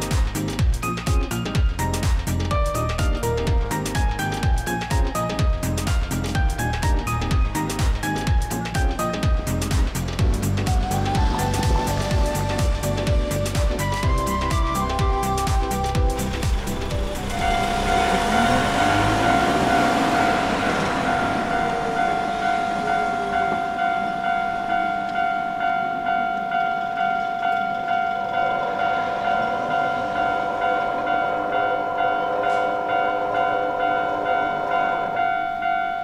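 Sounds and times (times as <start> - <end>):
train wheels rushing: 0.0 - 35.8
train motor whine: 16.2 - 25.2
level crossing bell ringing: 17.0 - 36.0.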